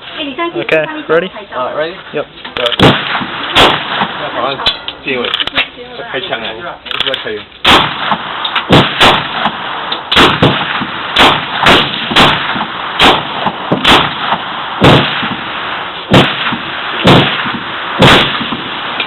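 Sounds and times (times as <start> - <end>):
pistol shots: 2.7 - 4.8, 7.6 - 19.0.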